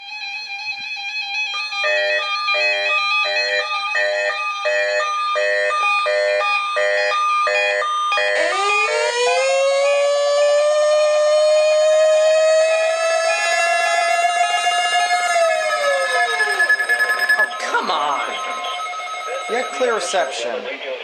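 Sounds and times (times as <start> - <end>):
siren wailing: 0.0 - 21.0
held high tone: 13.3 - 21.0.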